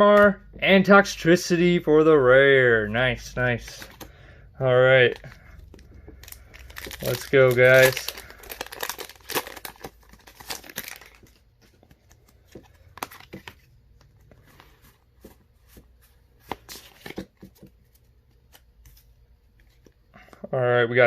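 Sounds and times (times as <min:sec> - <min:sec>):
foil wrapper tearing and crinkling: 0:06.2 - 0:11.4.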